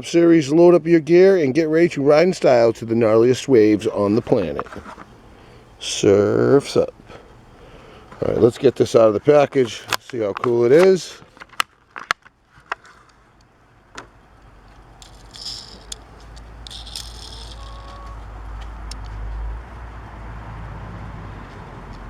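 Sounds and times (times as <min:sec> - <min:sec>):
plastic blister pack clicking: 0:15.0 - 0:18.2
plastic crinkling: 0:15.0 - 0:18.3.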